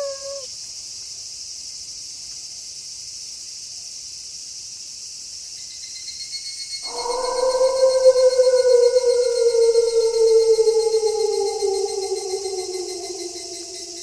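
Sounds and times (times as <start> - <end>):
wolf howling: 0.0 - 0.5, 6.8 - 14.0
crickets chirping: 0.0 - 2.1, 5.5 - 14.0.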